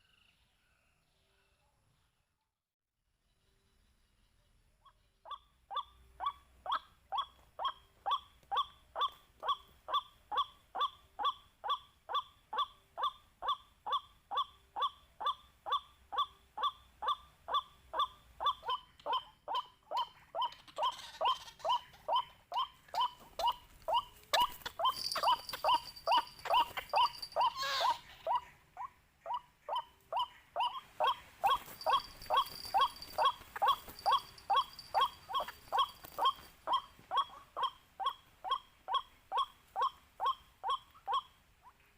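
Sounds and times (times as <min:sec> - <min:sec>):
waterhen calling: 0:18.4 - 0:28.6, 0:29.8 - 0:41.3.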